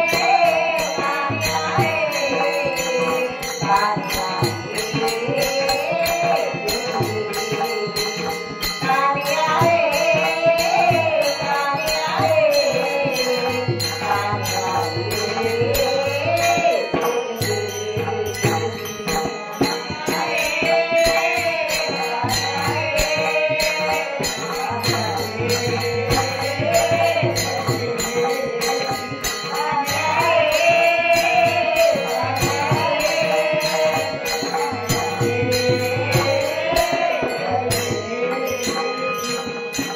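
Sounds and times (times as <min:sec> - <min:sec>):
woman singing devotional song: 0:00.0 - 0:39.9
fast percussion beat: 0:12.1 - 0:39.9.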